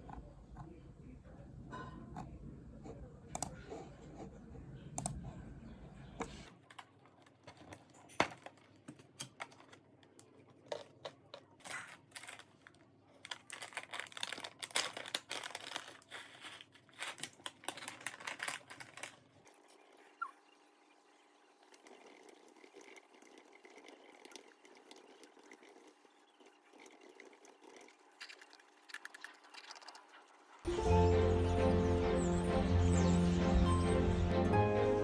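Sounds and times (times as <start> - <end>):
computer keyboard typing: 3.4 - 3.6.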